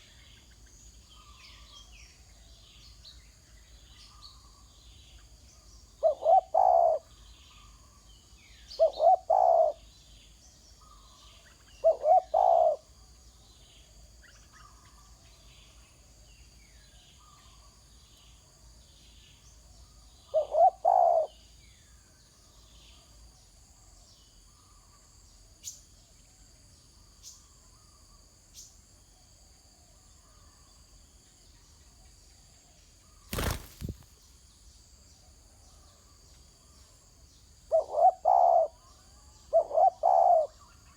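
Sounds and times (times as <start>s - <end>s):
small birds chirping: 0.0s - 25.0s, 31.2s - 40.9s
dove cooing: 6.0s - 7.1s, 8.8s - 9.8s, 11.8s - 12.8s, 20.3s - 21.3s, 37.7s - 38.8s, 39.5s - 40.6s
high insect drone: 33.2s - 40.9s.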